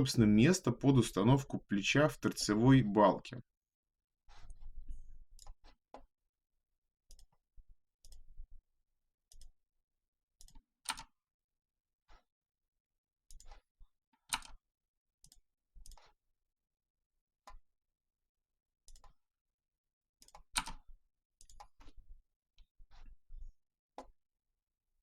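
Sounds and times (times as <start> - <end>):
mouse and keyboard clicks: 10.4 - 11.1, 13.3 - 13.6, 14.3 - 14.6, 20.2 - 21.9.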